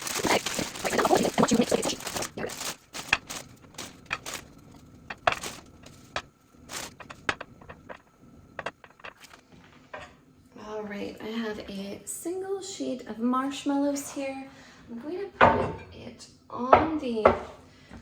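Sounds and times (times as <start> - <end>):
packaging crinkling and rustling: 0.0 - 7.2.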